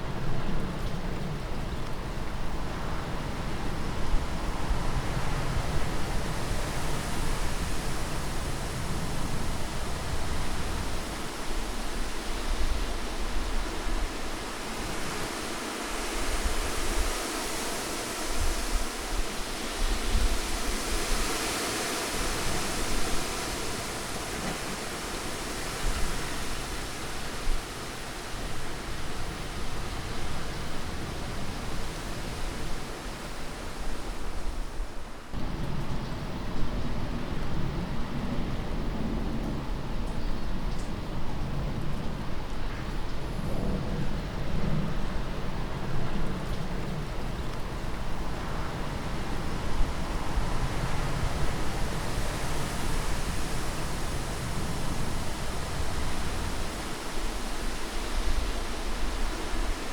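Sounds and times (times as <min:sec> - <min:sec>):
rushing wind: 0:00.0 - 0:59.9.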